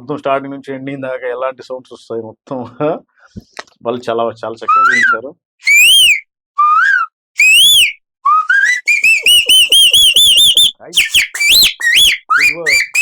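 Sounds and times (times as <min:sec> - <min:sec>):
person whistling birdsong: 0:04.7 - 0:13.0.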